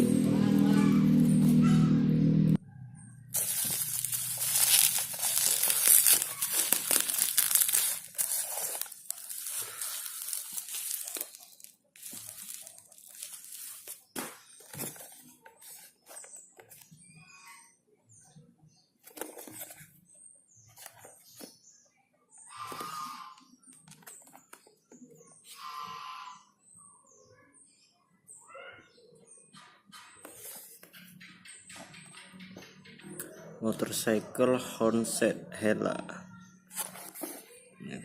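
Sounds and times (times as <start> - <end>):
packaging tearing and crinkling: 3.4 - 15.9
rustles and clicks of handling: 3.4 - 17.0, 19.0 - 20.0.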